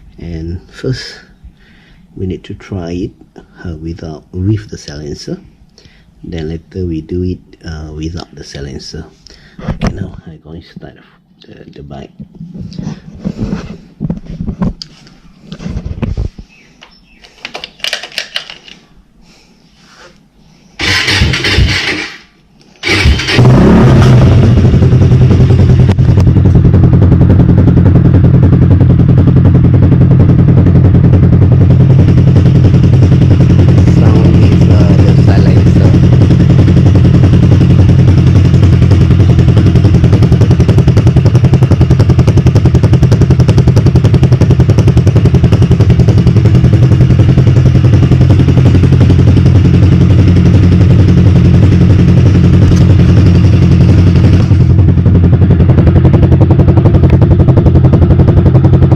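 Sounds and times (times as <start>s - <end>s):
motorcycle engine starting and idling: 20.8s - 58.9s.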